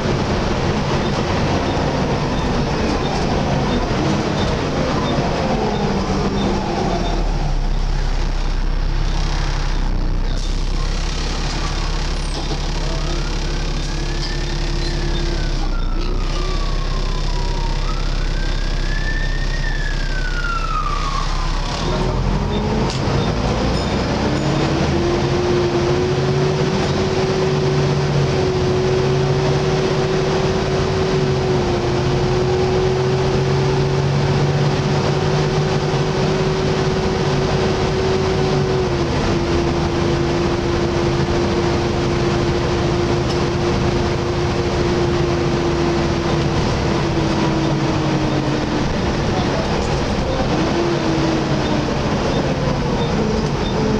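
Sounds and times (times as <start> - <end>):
bus engine whine: 0.0 - 53.9
siren wailing: 1.2 - 9.2, 12.6 - 22.8.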